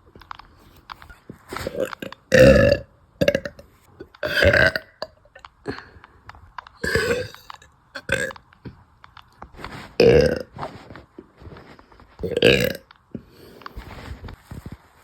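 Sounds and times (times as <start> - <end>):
woman burping: 1.7 - 5.9, 6.8 - 8.4, 12.2 - 12.9.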